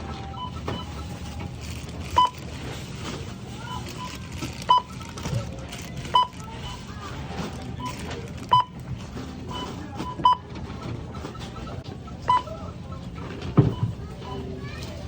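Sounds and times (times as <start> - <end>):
murmur of busy store: 0.0 - 15.0
barcode scanner beeps: 0.3 - 2.6, 3.7 - 6.9, 7.8 - 8.9, 9.5 - 10.4, 12.2 - 12.5.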